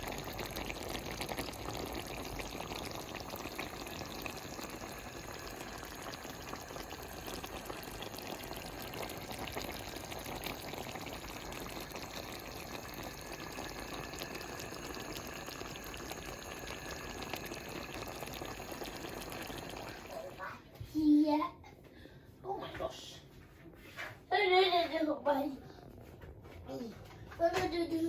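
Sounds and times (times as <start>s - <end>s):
stew bubbling and crackling: 0.0s - 20.6s.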